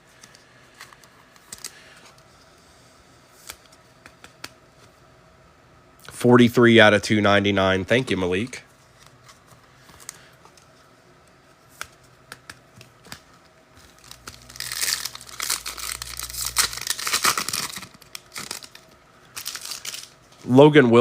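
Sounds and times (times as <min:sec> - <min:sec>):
foil wrapper tearing and crinkling: 0:13.8 - 0:20.2.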